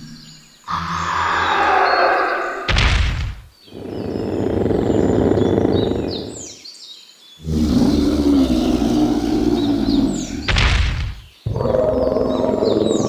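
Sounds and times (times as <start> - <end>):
high falling chirps: 0.0 - 6.5
creature growling calls: 0.7 - 3.0, 3.7 - 6.6, 7.4 - 10.6, 11.4 - 13.0.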